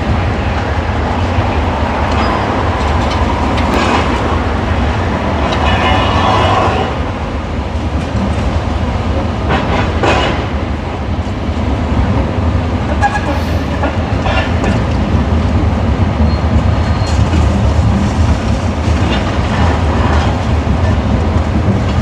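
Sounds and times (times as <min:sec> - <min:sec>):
diesel machinery rumbling: 0:12.1 - 0:22.0.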